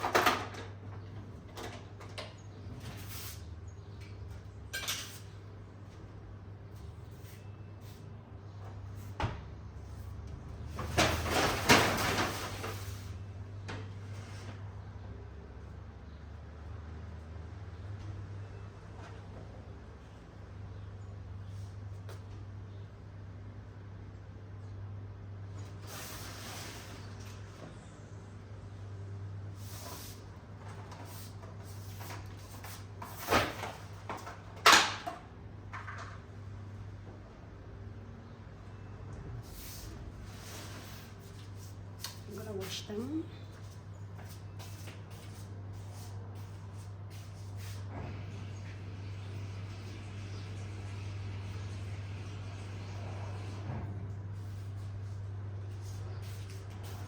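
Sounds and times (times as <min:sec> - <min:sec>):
clattering and rustling: 0:10.6 - 0:13.2.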